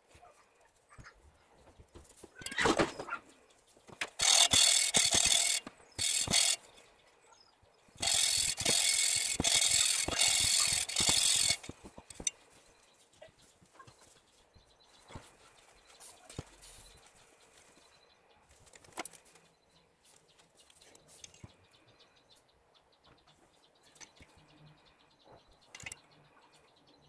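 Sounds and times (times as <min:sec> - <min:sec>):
valve lapping metal rasp: 0:04.2 - 0:06.6, 0:08.0 - 0:12.3.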